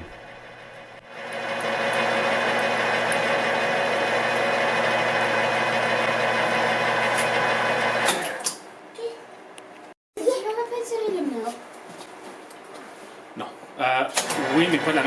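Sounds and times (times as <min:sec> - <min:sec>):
milling machine running: 0:00.0 - 0:08.4, 0:14.2 - 0:15.0.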